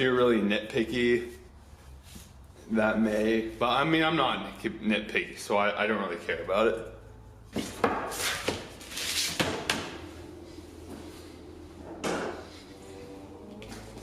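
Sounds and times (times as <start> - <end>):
low steady hum: 8.8 - 14.0.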